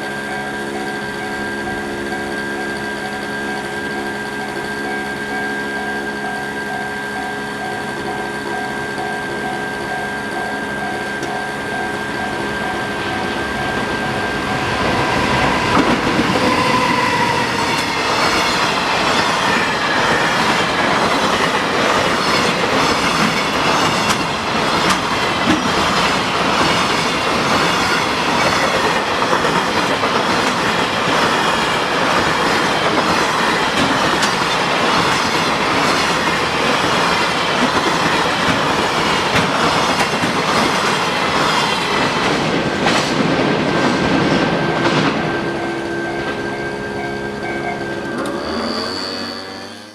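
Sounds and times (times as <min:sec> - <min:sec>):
freight train passing: 0:00.0 - 0:49.9
level crossing warning bell: 0:00.0 - 0:49.9
wheels clacking over rail joints: 0:07.6 - 0:49.3
wheel squeal: 0:44.6 - 0:49.9.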